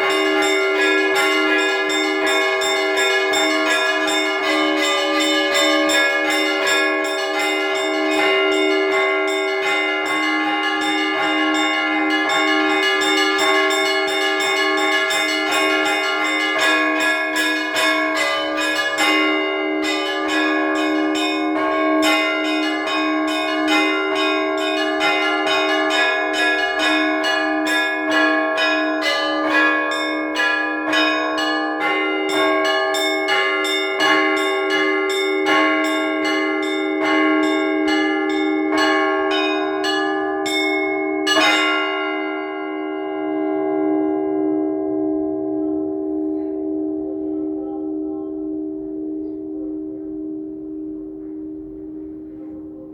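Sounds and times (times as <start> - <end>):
small bells struck rapidly: 0.0 - 42.3
large bell humming: 0.0 - 52.9.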